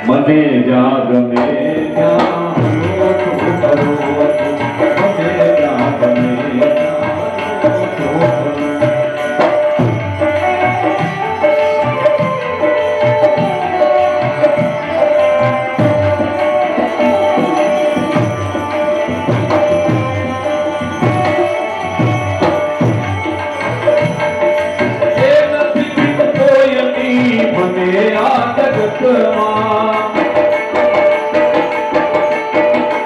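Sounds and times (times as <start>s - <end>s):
person singing: 0.0s - 9.9s, 10.8s - 24.0s, 24.9s - 30.9s
held instrumental notes: 0.0s - 33.0s
tabla drums beating: 0.0s - 33.0s.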